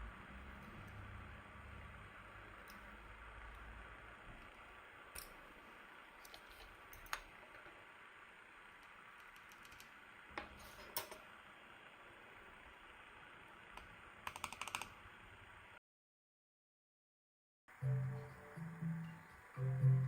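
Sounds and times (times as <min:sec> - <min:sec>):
mechanical keyboard key clicks: 0:14.3 - 0:14.9.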